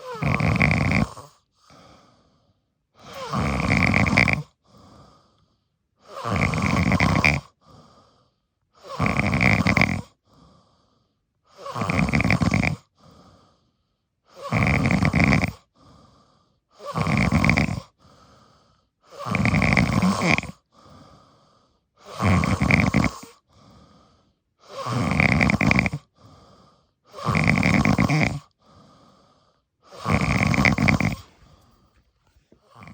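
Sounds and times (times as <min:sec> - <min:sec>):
deep rhythmic snoring: 0:00.0 - 0:32.9
faint breath: 0:01.6 - 0:03.3, 0:04.6 - 0:05.9, 0:07.6 - 0:08.6, 0:10.2 - 0:11.2, 0:13.0 - 0:14.1, 0:15.8 - 0:16.7, 0:18.0 - 0:19.0, 0:20.7 - 0:21.9, 0:23.5 - 0:24.4, 0:26.2 - 0:27.0, 0:28.6 - 0:29.7, 0:30.5 - 0:32.9.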